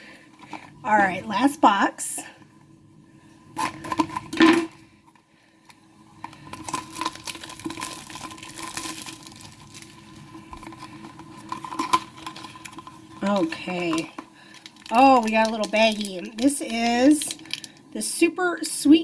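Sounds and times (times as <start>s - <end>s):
cardboard packaging crinkling: 6.3s - 17.9s.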